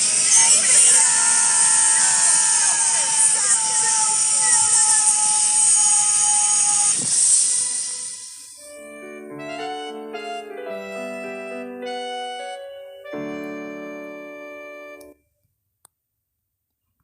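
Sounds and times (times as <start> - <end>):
keyboard melody: 8.6 - 15.2.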